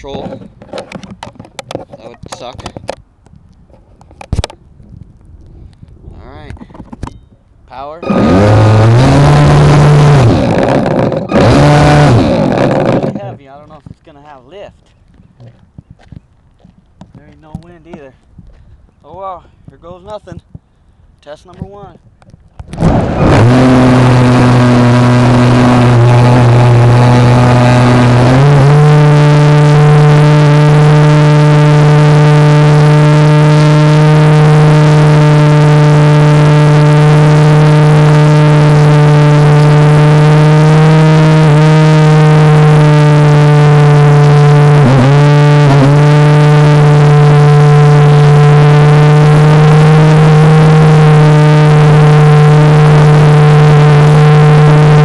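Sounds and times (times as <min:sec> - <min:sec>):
model airplane motor droning: 0:08.0 - 0:13.3, 0:22.9 - 0:55.0.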